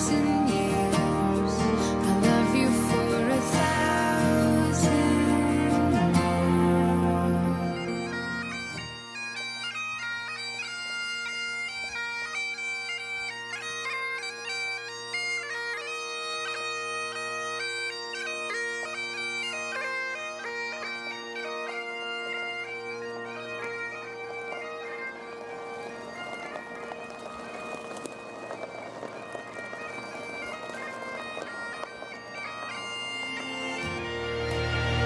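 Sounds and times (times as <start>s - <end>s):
other music: 0.0s - 8.9s, 32.7s - 35.0s
bagpipes playing: 0.0s - 35.0s.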